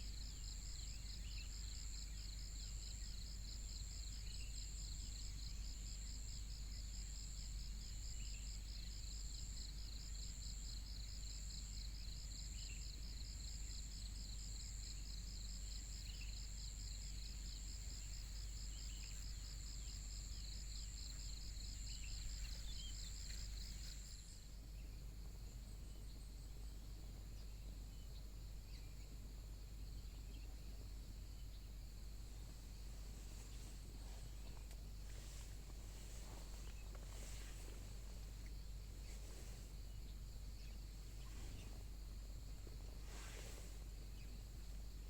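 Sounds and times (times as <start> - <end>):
insects chirping in pulses: 0.0 - 26.2, 27.2 - 45.0
high continuous insect trill: 0.0 - 45.0
faint bird chirps: 21.1 - 24.1, 24.7 - 29.2, 33.2 - 42.4.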